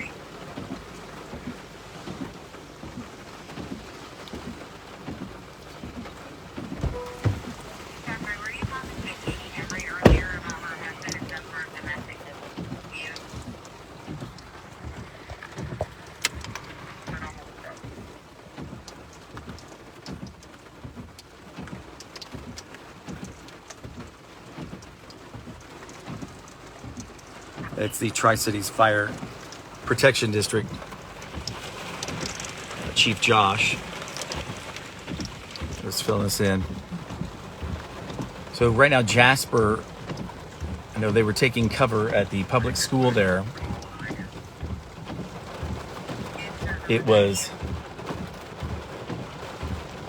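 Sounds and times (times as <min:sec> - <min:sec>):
rain hissing: 0:00.0 - 0:50.0
low thumps: 0:06.6 - 0:07.9, 0:08.6 - 0:10.6.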